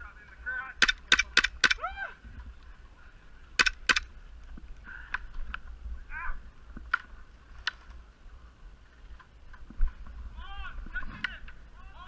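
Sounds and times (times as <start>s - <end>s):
airsoft gun shots: 0.8s - 1.8s, 3.6s - 4.0s.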